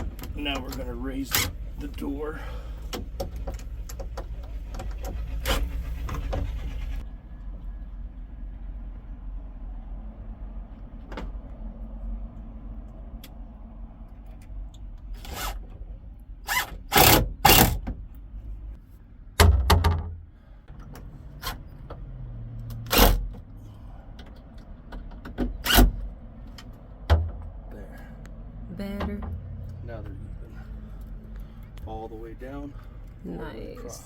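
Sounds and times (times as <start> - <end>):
power drill driving screws: 15.2 - 15.6, 16.5 - 17.8.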